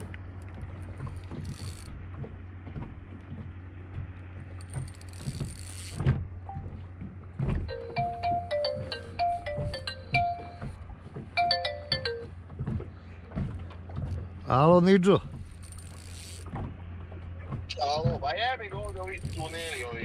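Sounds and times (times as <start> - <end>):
phone ringtone melody: 7.7 - 10.8, 11.4 - 12.4.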